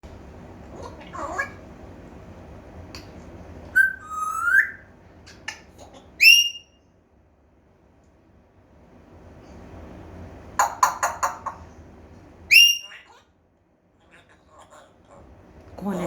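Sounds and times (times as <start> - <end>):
parrot whistling: 3.7 - 4.9, 6.2 - 6.8, 12.5 - 13.1.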